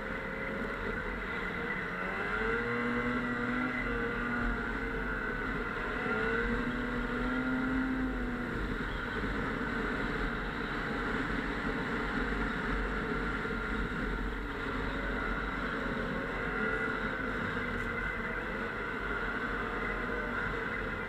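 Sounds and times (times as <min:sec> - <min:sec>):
snowmobile engine running: 0:00.0 - 0:21.0
steady rushing noise: 0:07.9 - 0:21.0.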